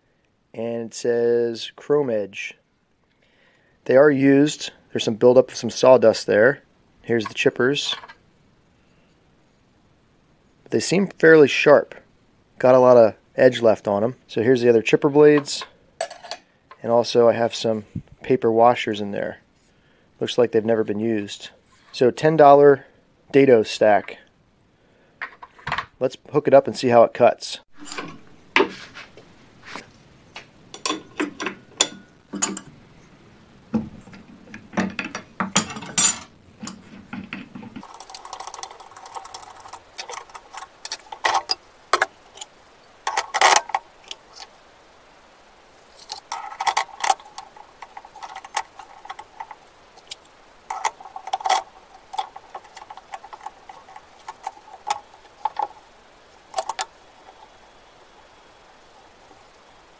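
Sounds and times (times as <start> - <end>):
metal blades clinking and rattling: 27.8 - 28.3, 30.8 - 32.8, 34.9 - 37.0, 37.8 - 42.5, 46.0 - 55.9, 56.5 - 57.5.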